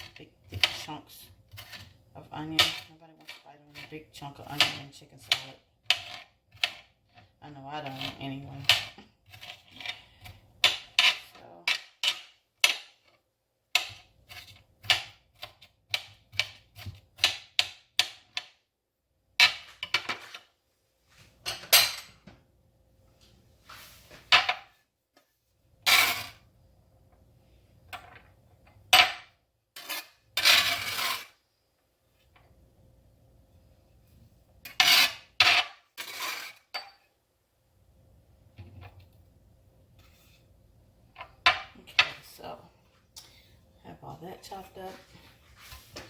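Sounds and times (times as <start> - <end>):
knife scraping cutting board: 1.5 - 2.0, 4.6 - 11.4, 13.9 - 17.0, 40.0 - 40.5.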